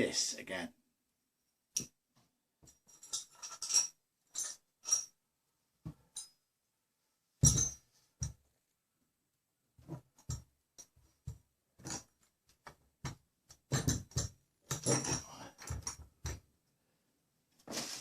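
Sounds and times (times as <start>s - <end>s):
small metal hardware clinking: 2.7s - 5.2s.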